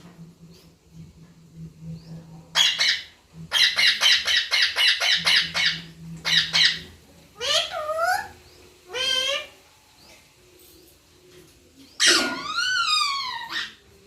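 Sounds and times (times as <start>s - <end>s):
parrot squawking: 2.5s - 9.6s, 12.0s - 13.9s.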